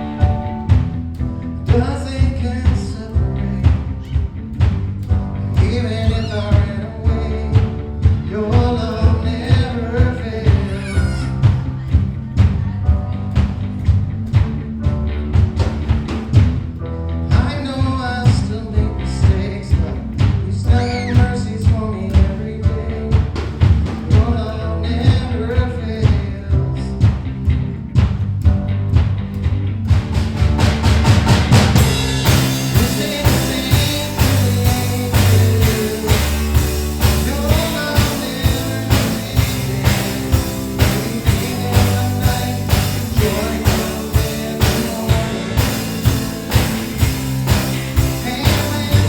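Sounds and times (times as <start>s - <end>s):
steady drum beat: 0.0s - 49.0s
worship band playing: 0.0s - 49.0s
person singing: 5.4s - 13.2s, 17.3s - 23.4s, 32.2s - 47.2s, 47.9s - 49.0s.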